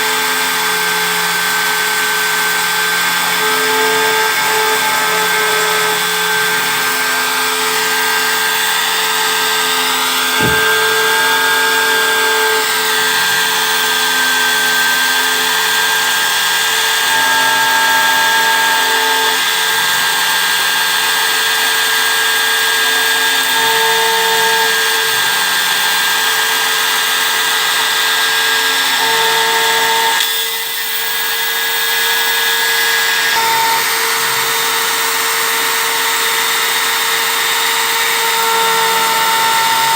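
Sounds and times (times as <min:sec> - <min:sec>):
motor tones switching on and off: 0:00.0 - 0:20.8, 0:32.2 - 0:39.9
engraving machine whine and hiss: 0:00.0 - 0:39.9.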